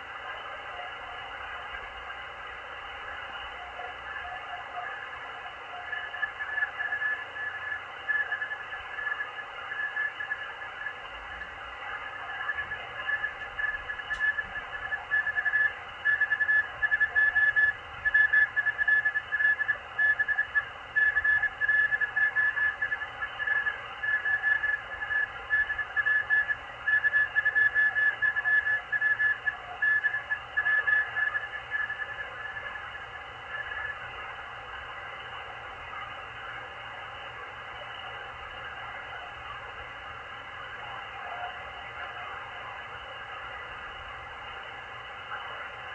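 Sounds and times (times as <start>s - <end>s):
receiver hiss: 0.0s - 45.9s
morse code whistling tone: 12.3s - 32.2s.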